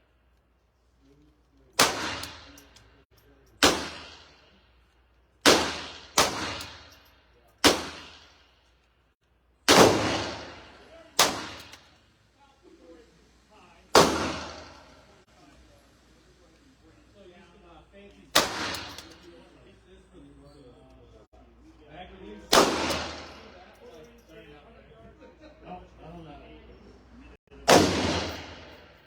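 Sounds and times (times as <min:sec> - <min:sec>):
handgun gunshots echoing: 0:01.8 - 0:02.6, 0:03.6 - 0:04.3, 0:05.4 - 0:06.9, 0:07.6 - 0:08.4, 0:09.7 - 0:11.9, 0:14.0 - 0:15.0, 0:18.4 - 0:19.2, 0:22.5 - 0:23.6, 0:27.7 - 0:28.9.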